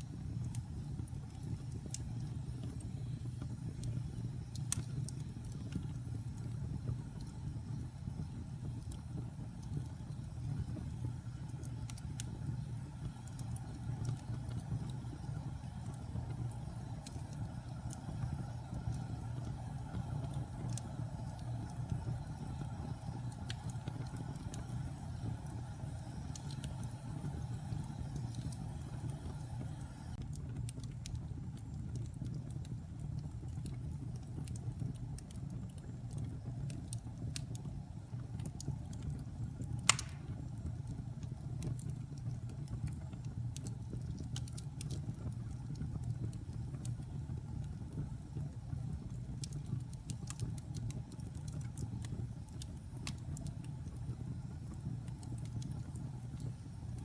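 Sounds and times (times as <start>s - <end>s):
wood fire crackling: 0.0s - 57.0s
sharp fire pop: 39.8s - 40.6s.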